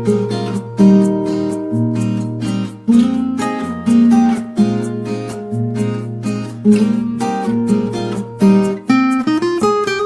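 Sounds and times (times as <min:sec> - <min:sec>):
strummed acoustic guitar: 0:00.0 - 0:10.0.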